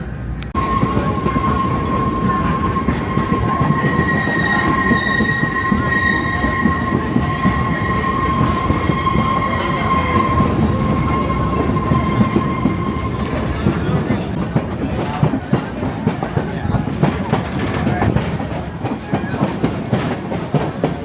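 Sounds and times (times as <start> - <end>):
train wheels rumbling on rail: 0.0 - 21.0
higher squealing tone: 0.6 - 14.2
high-pitched wheel squeal: 0.6 - 14.3.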